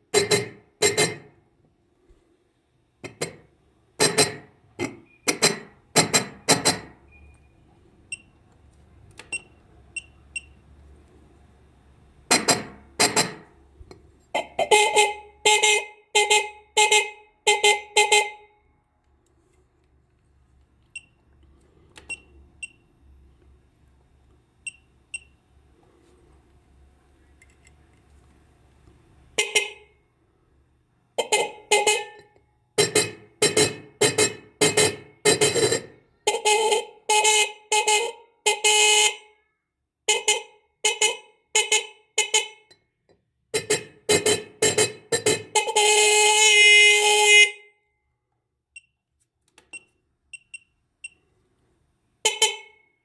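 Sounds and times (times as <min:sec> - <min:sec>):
car horn honks: 0:14.3 - 0:18.6, 0:29.4 - 0:30.0, 0:31.2 - 0:39.5, 0:40.1 - 0:42.7, 0:43.6 - 0:47.7, 0:52.2 - 0:52.9.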